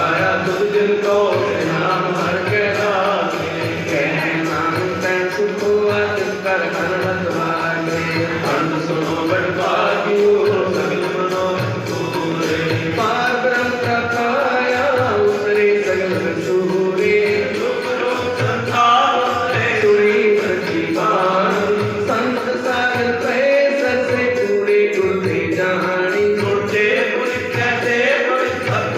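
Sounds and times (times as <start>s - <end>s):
chant-like singing: 0.0s - 15.3s
instrumental accompaniment: 0.0s - 28.9s.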